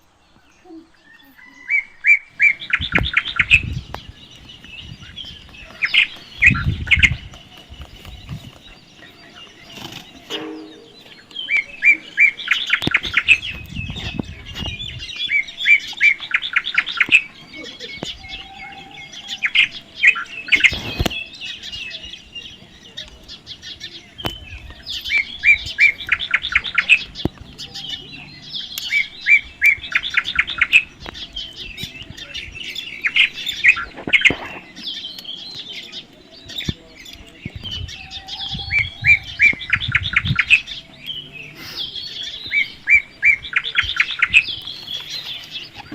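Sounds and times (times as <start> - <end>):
low thumps: 10.2 - 11.3.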